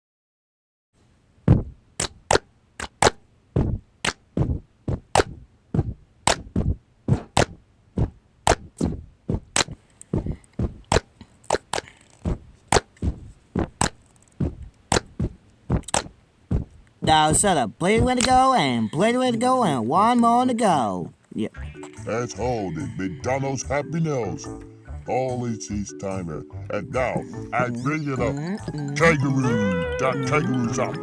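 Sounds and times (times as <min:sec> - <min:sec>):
sharp clicks or crunches: 0:02.0 - 0:03.2, 0:10.9 - 0:16.1.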